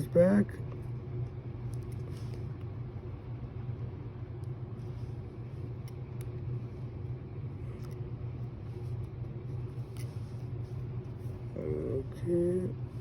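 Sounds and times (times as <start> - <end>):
machinery humming: 2.7 - 13.0.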